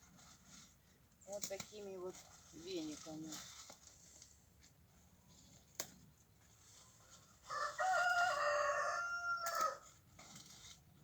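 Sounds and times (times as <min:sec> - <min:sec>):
rooster crowing: 0:07.5 - 0:09.8.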